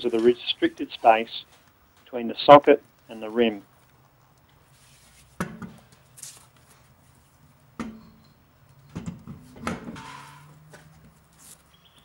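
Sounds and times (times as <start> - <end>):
faint rustling: 0.0 - 7.4.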